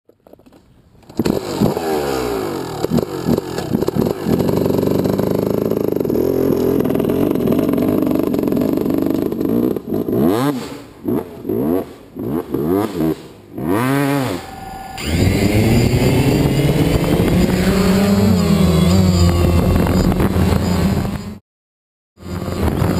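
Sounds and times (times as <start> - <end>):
dirt bike engine revving: 1.1 - 20.8
low engine drone: 14.0 - 19.6.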